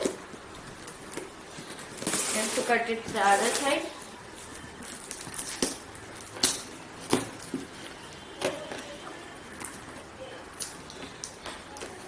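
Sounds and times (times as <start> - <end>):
packing tape being cut: 1.6 - 3.8.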